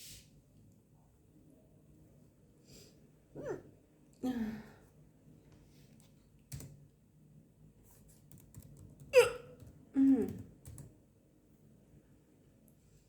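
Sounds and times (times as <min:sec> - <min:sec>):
woman hiccuping: 0:09.1 - 0:09.6.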